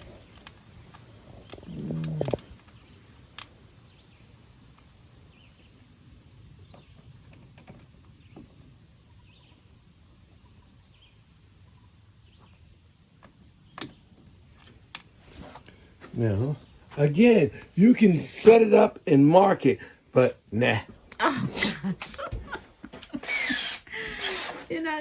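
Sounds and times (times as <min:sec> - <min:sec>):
pitched whir: 0:23.2 - 0:24.8.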